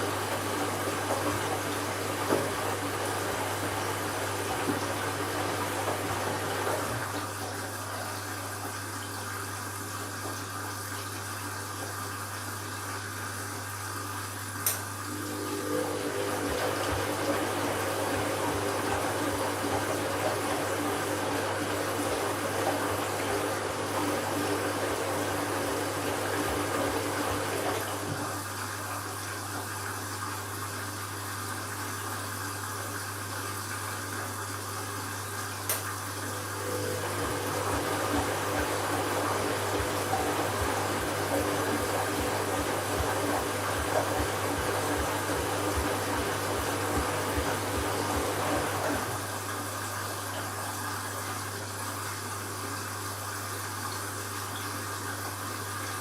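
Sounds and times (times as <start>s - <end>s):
washing machine running: 0.0s - 56.0s
water rushing: 15.1s - 29.6s, 36.3s - 52.0s.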